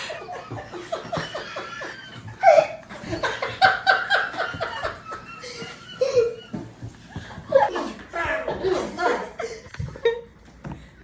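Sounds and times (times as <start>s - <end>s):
man laughing hard: 0.0s - 6.7s.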